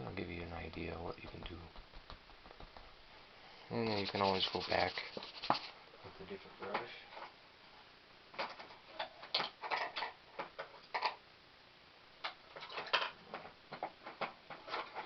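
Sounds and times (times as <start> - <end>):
paintbrush dabbing on canvas: 3.7 - 5.8.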